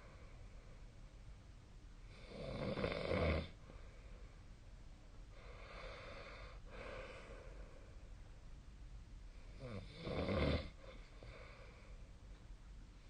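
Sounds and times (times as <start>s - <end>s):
person snoring: 9.6s - 10.8s.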